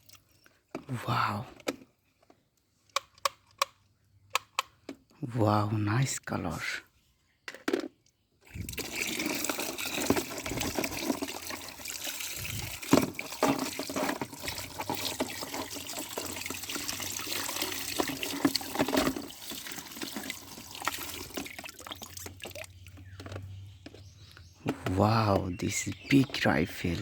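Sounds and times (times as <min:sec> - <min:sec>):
water running and splashing: 0:08.5 - 0:23.0.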